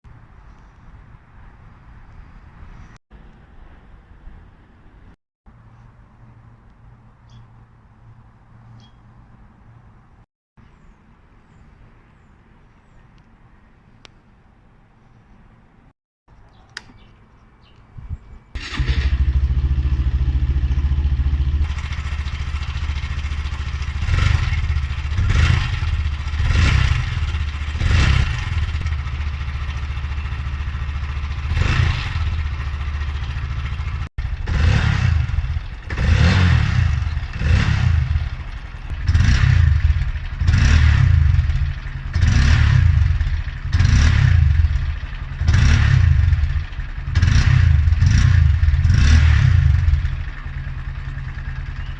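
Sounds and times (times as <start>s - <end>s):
motorcycle engine idling and revving: 18.6s - 51.9s.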